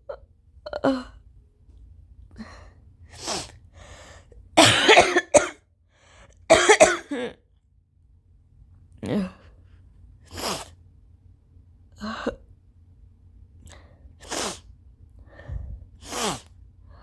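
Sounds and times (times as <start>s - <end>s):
person sneezing: 4.6s - 5.6s, 10.3s - 10.7s, 16.0s - 16.5s.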